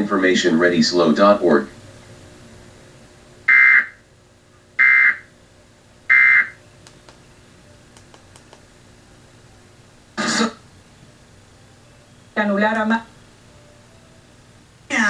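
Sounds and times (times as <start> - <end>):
raspy digital data tones: 3.5 - 4.0, 4.8 - 5.2, 6.1 - 6.6.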